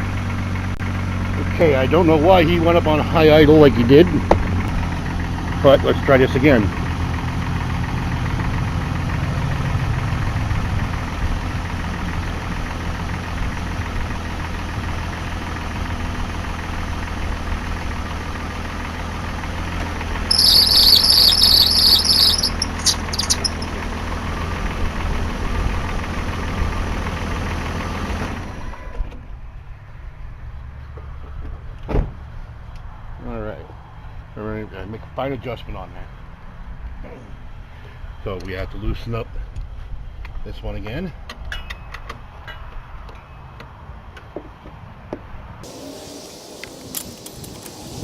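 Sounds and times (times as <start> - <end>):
high-pitched belt squeal: 20.3 - 23.7
short belt chirps: 20.3 - 23.7.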